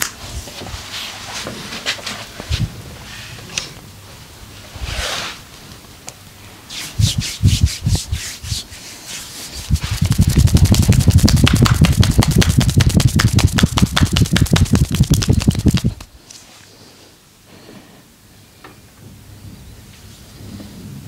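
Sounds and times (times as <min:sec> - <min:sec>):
hands rubbing skin: 0:06.7 - 0:16.2
soft pats on skin: 0:06.8 - 0:16.4
fast percussive strikes on skin: 0:09.6 - 0:16.2.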